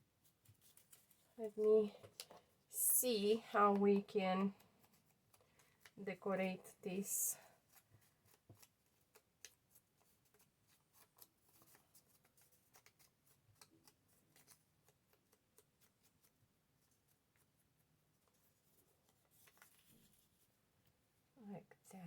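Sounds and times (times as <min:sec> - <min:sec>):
paper rustling: 0:00.2 - 0:01.4, 0:07.6 - 0:20.6
small clicks and taps: 0:08.2 - 0:09.6.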